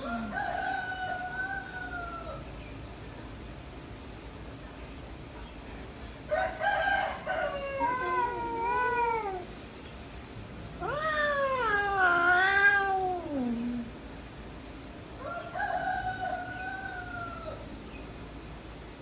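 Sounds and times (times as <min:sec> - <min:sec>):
cat yowling: 0:07.5 - 0:09.5, 0:10.8 - 0:13.9.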